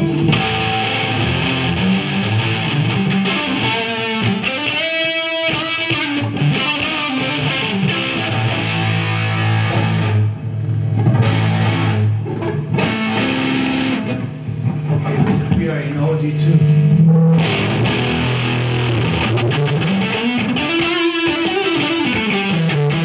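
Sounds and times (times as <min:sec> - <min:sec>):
electric guitar riffing: 0:00.0 - 0:23.0.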